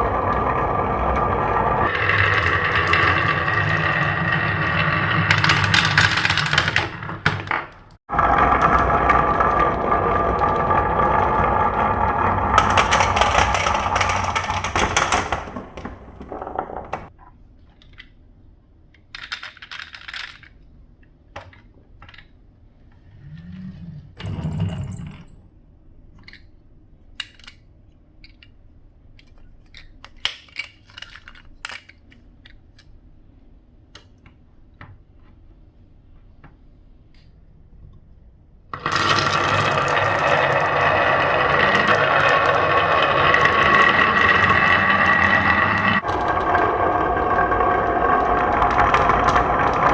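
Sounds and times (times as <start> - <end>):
marbles rolling on a wooden run: 0.0 - 17.1, 38.8 - 49.9
marbles clicking and rattling: 1.8 - 7.4, 12.4 - 16.9, 38.8 - 49.9.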